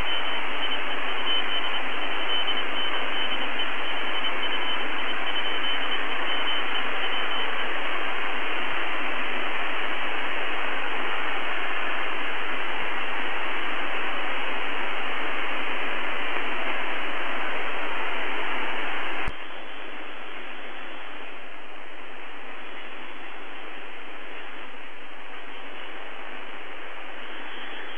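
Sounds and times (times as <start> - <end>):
radio static hiss: 0.0 - 27.9.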